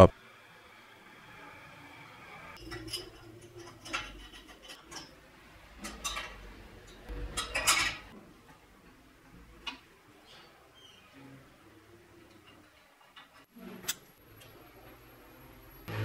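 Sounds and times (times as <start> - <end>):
steel parts clinking: 2.6 - 8.1.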